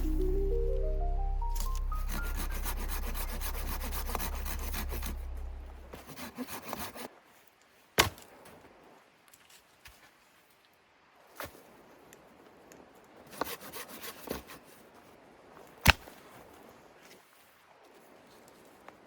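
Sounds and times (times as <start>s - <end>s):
deep sustained bass music: 0.0s - 5.9s
rubbing and handling noises: 1.6s - 7.1s.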